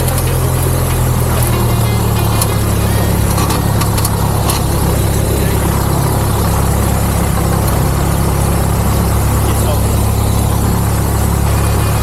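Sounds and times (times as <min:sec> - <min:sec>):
light aircraft engine idling: 0:00.0 - 0:12.0.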